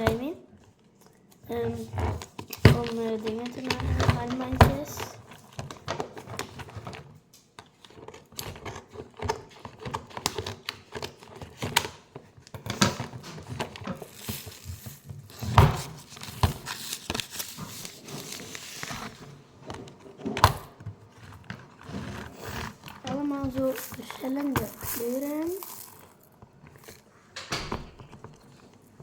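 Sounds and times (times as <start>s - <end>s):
packaging crinkling: 12.4s - 27.1s.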